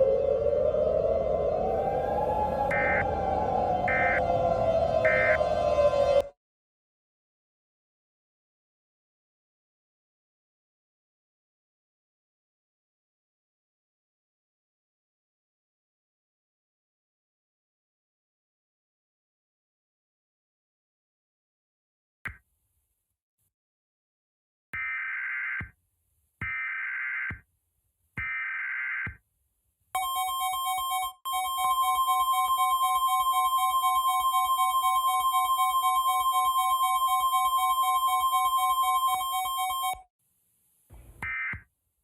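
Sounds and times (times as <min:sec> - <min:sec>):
two-tone attention signal: 0:30.0 - 0:40.0.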